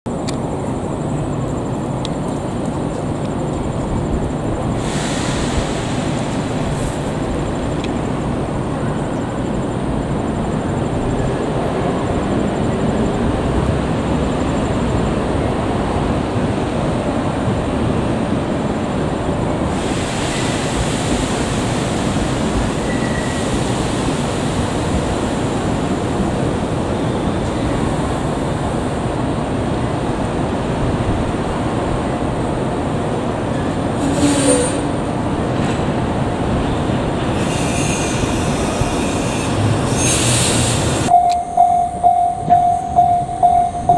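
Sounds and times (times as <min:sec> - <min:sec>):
train wheels rumbling on rails: 0:00.1 - 0:43.9
bright hiss: 0:04.7 - 0:07.2, 0:19.7 - 0:25.9.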